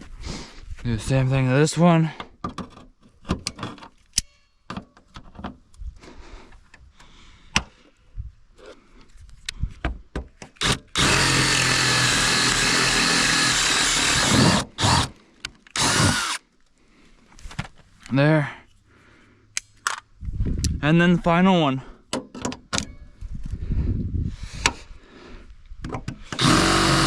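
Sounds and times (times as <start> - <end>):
power drill drilling: 10.6 - 16.4, 26.3 - 27.0.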